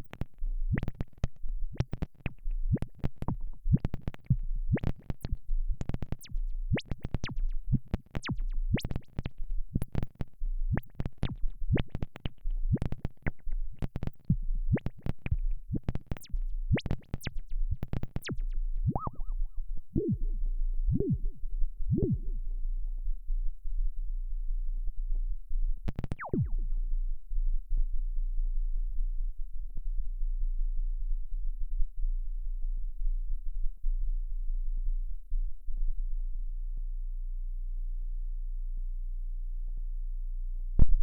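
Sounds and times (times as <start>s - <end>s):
pulsing low synth bass: 0.0s - 41.0s
low synth notes: 10.6s - 35.0s
synthesizer zaps falling in pitch: 18.0s - 20.3s, 26.0s - 26.7s.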